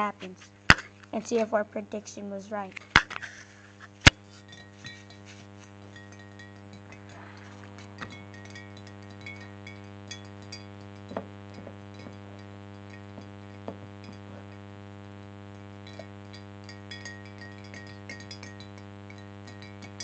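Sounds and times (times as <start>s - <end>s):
low electrical hum: 0.0s - 20.0s
spoon clinking against glass: 4.2s - 14.6s, 15.8s - 20.0s.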